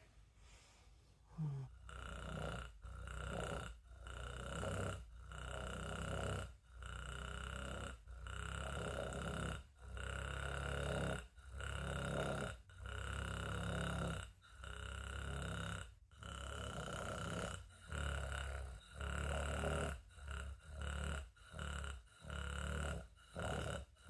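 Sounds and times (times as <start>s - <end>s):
person grunting breaths: 1.3s - 1.8s.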